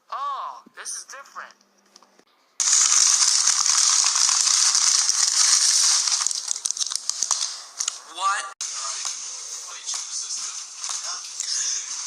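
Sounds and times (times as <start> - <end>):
crackling hiss: 2.6 - 7.6.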